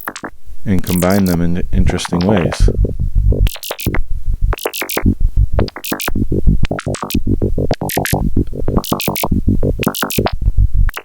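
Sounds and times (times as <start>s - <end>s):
synthesizer blips jumping in pitch: 4.8s - 10.4s.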